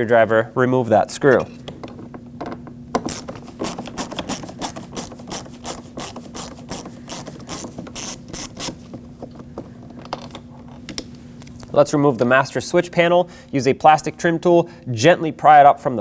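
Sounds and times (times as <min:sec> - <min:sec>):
ratcheting screwdriver clicking: 0:03.1 - 0:08.8.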